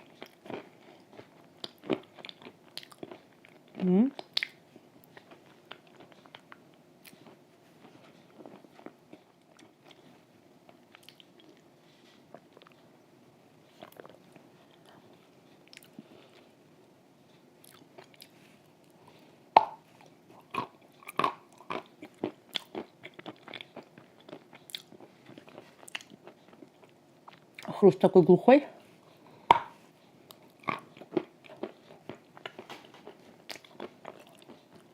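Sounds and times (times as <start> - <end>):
wet chewing: 0.0 - 7.4, 20.4 - 27.7, 29.5 - 34.9.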